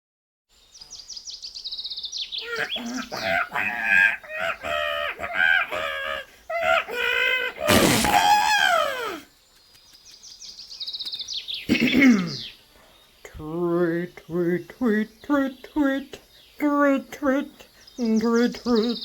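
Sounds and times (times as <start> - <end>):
cartoon bird chirping: 6.6 - 8.9
cartoon bird screech: 7.6 - 9.1.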